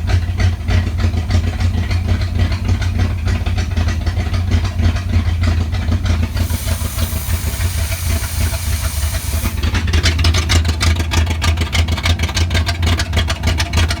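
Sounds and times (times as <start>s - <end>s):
car engine idling: 0.2s - 13.2s
hiss: 6.2s - 10.3s.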